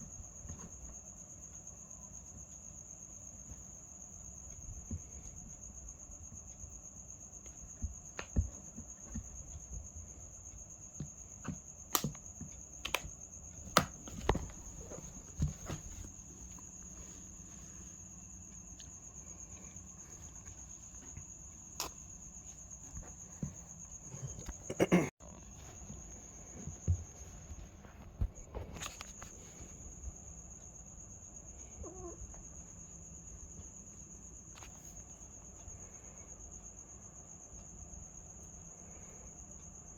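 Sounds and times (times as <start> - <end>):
crickets chirring: 0.0 - 39.9.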